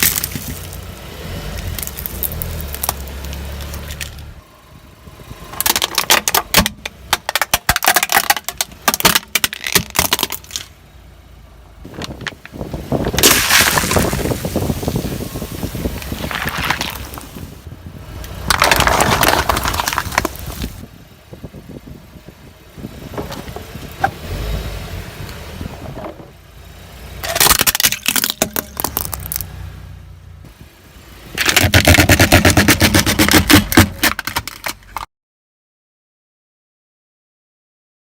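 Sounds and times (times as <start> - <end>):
objects crunching under car tyre: 0.0 - 4.4, 5.4 - 10.8, 11.8 - 20.9, 22.9 - 24.6, 27.2 - 29.7, 31.2 - 35.1.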